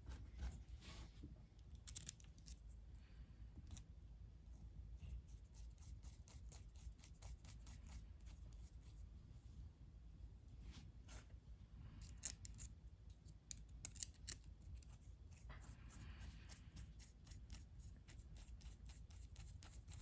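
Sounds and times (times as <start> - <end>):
small metallic clicks and taps: 1.6 - 2.6, 12.0 - 14.9.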